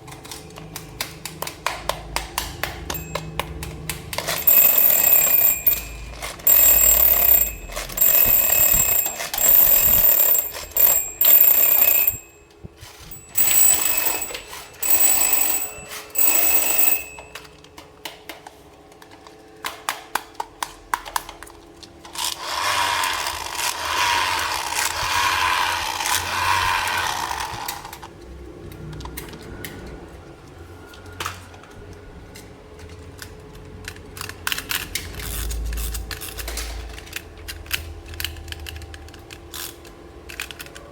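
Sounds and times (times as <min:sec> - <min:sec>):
toy bell ringing: 0:02.8 - 0:03.4, 0:04.2 - 0:17.5
handling noise: 0:04.2 - 0:17.4.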